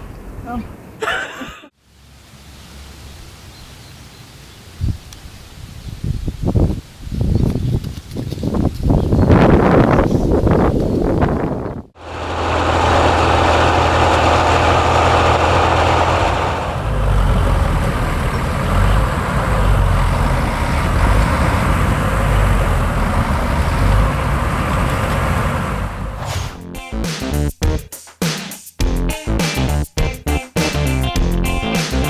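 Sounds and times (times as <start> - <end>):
vehicle engine running: 12.0 - 25.1.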